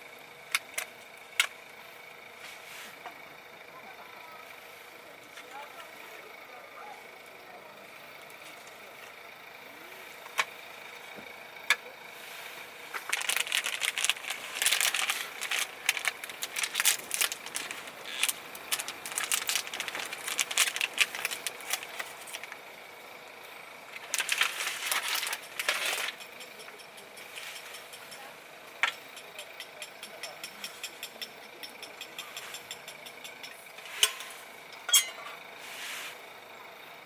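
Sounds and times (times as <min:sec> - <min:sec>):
crinkling and rattling: 0:12.8 - 0:22.7, 0:23.9 - 0:27.9.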